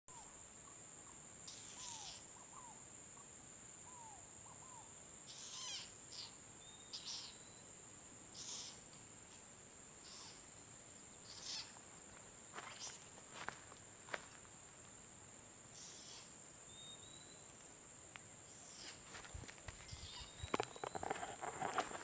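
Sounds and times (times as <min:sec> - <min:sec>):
insects trilling: 0:00.1 - 0:22.0
short chirping calls: 0:01.4 - 0:02.8, 0:03.9 - 0:08.9, 0:10.0 - 0:10.6, 0:11.2 - 0:11.8, 0:12.6 - 0:13.1, 0:15.7 - 0:17.6, 0:18.4 - 0:22.0.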